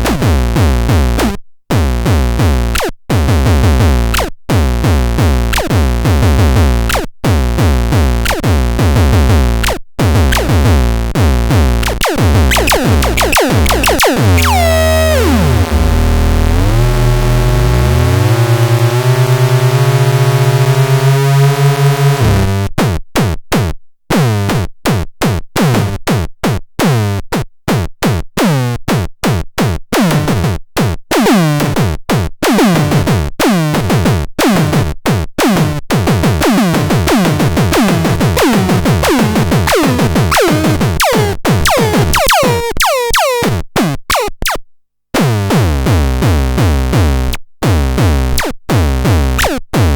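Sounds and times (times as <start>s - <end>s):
electronic synthesizer tones: 9.6s - 10.6s, 11.8s - 17.4s, 38.4s - 43.5s, 44.1s - 44.6s, 49.4s - 49.6s.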